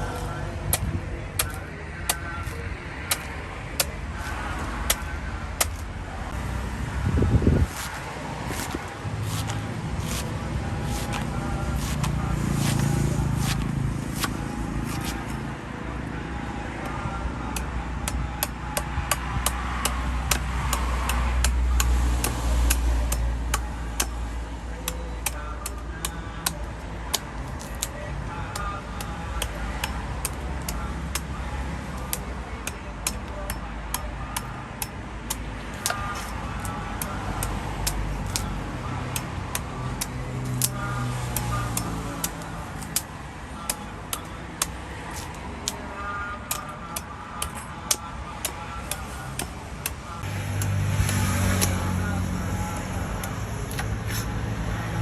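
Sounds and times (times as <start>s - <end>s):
knife chopping into coconuts: 0.0s - 5.9s, 7.6s - 15.4s, 32.0s - 38.6s, 39.2s - 45.8s, 46.4s - 52.0s, 53.7s - 54.3s.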